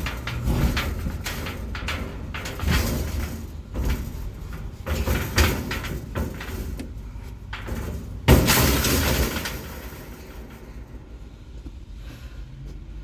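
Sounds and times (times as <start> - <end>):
clatter: 0.0 - 11.7
knocks and scrapes: 0.0 - 11.7
loud bang: 8.3 - 11.2.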